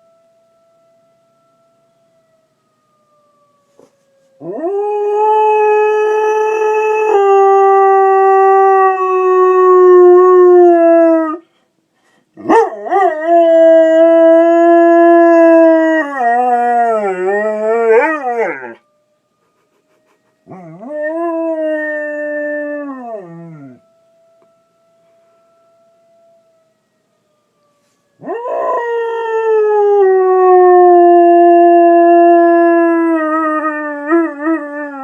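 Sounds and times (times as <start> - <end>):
dog howling: 12.4 - 18.8.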